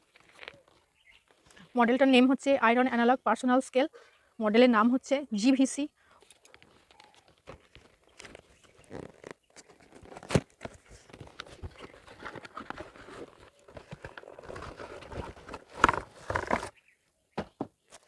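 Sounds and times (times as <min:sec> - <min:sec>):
packaging rustling and scraping: 0:06.7 - 0:16.7.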